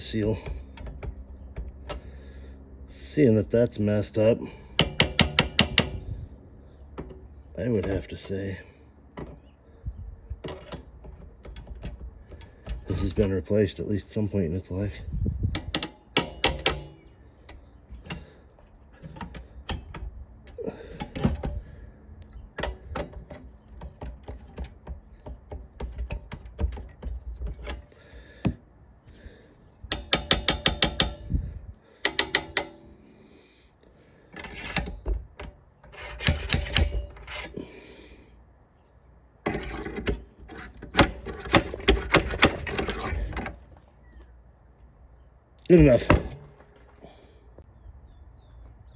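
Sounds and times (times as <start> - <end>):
handling knocks: 45.8 - 47.0.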